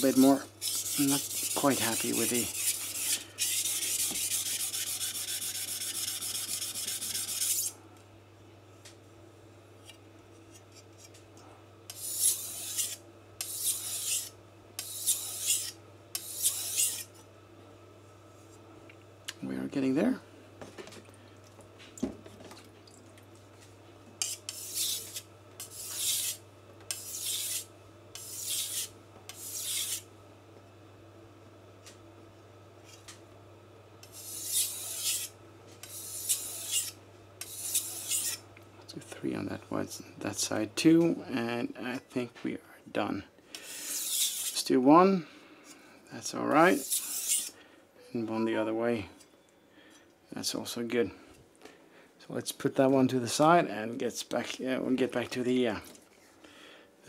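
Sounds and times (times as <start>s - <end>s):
knife scraping on whetstone: 0.0s - 7.8s, 11.9s - 17.1s, 24.2s - 30.0s, 34.0s - 38.4s, 43.6s - 44.6s, 46.7s - 47.6s.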